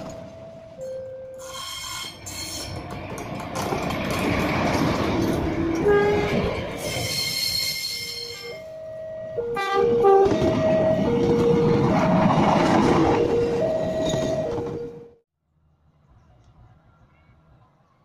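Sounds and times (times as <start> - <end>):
train rumbling past: 0.0 - 8.6, 9.2 - 15.2
two-pitch train horn: 5.6 - 6.5, 9.4 - 10.5.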